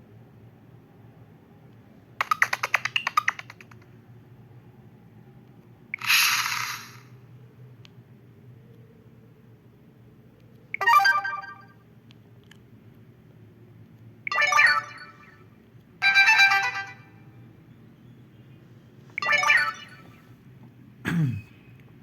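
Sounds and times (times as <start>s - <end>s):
electronic phone ringtone: 10.8s - 11.8s, 14.3s - 15.4s, 16.0s - 17.1s, 19.2s - 20.2s.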